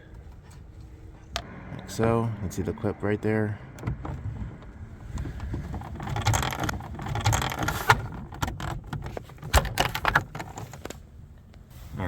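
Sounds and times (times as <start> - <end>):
plastic trim rubbing and rustling: 3.8 - 11.0.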